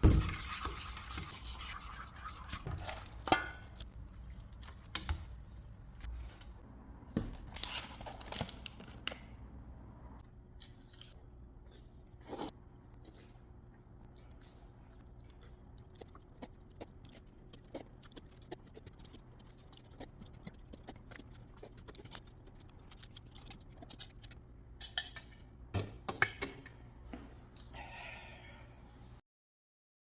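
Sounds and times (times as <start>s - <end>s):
person chewing noodles: 10.6s - 24.4s.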